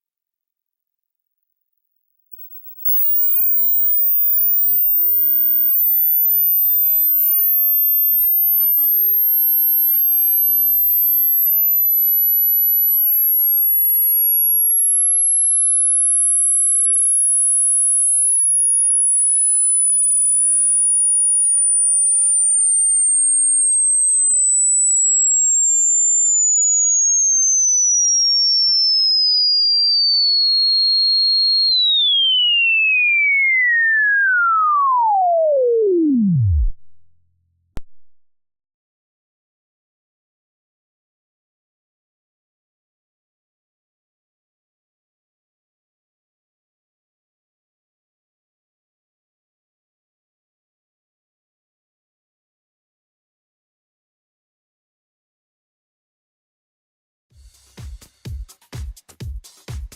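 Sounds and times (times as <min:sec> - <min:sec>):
pure tone sweeping down: 0:02.3 - 0:06.7, 0:33.5 - 0:37.2.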